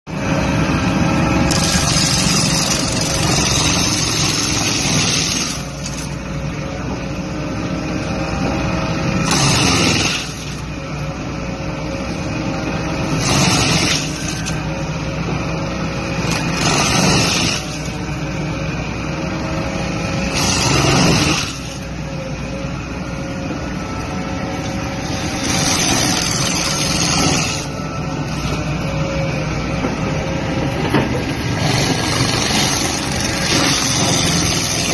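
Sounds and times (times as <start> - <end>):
mulcher engine humming: 0.1 - 34.9
mulcher grinding wood: 0.1 - 34.9.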